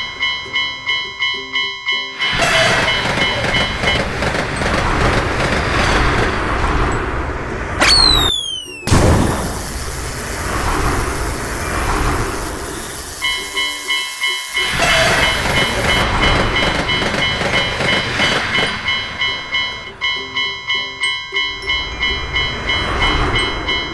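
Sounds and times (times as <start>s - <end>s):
train rumbling: 0.0s - 7.8s, 9.0s - 23.9s
railroad crossing warning bell: 0.0s - 23.9s
short falling tone: 7.8s - 10.3s.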